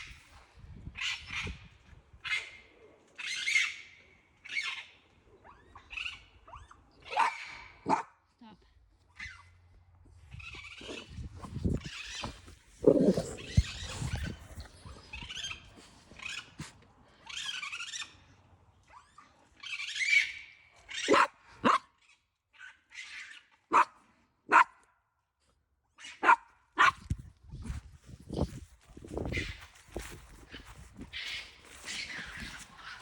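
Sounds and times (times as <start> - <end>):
animals screeching and growling: 10.3 - 21.3, 29.2 - 33.0.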